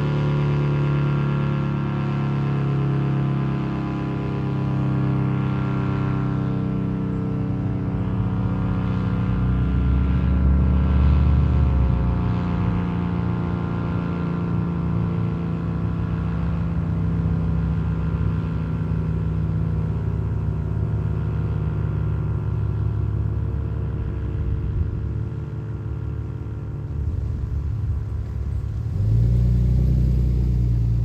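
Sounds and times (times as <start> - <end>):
low rumble: 24.4 - 31.0.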